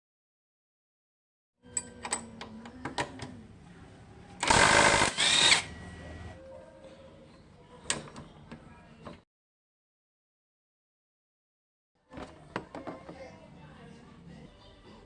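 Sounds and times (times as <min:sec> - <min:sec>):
handheld power tool running: 0:04.4 - 0:05.7.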